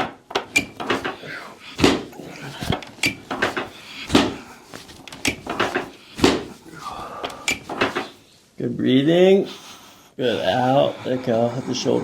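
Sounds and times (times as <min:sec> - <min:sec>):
dull thumps on padded table: 0:01.8 - 0:06.6.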